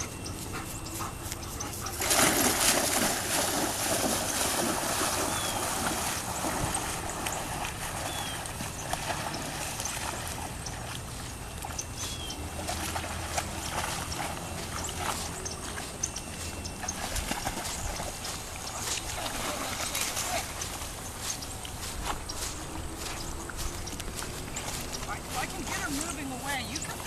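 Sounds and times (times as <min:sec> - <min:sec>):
dog splashing in water: 0:01.8 - 0:22.0.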